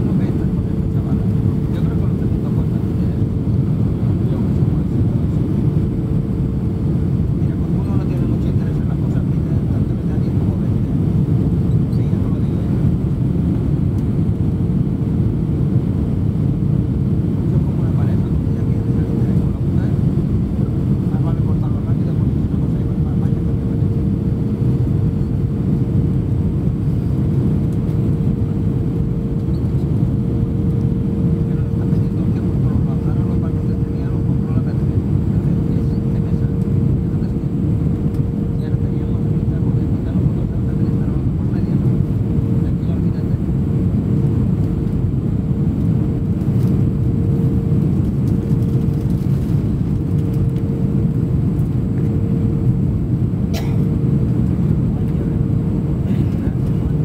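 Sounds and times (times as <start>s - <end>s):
aircraft engine and airflow rumble: 0.0s - 57.0s
constant hum: 0.0s - 57.0s.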